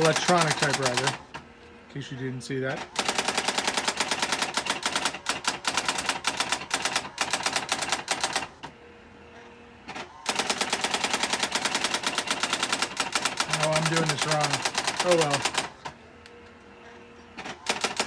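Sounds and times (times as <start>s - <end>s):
electronic typewriter typing: 0.0s - 1.2s, 3.0s - 8.5s, 10.3s - 15.8s, 17.6s - 18.0s
faint motor hum: 0.0s - 18.0s.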